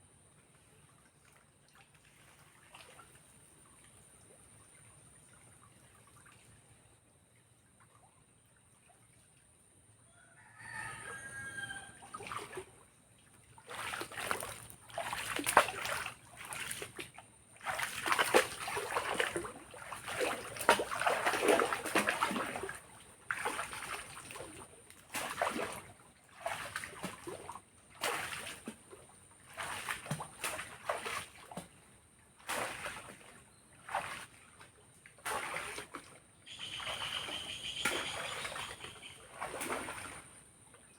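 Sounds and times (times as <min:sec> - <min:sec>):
water splashing and sloshing: 0:00.5 - 0:09.9, 0:10.6 - 0:40.9
rooster crowing: 0:10.1 - 0:12.1.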